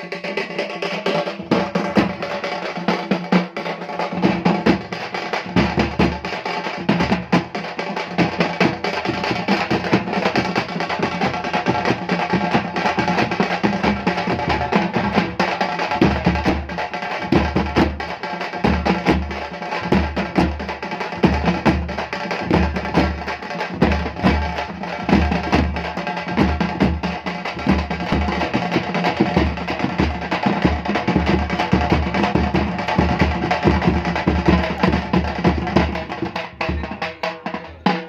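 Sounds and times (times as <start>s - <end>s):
drums playing fast beat: 0.0s - 38.0s.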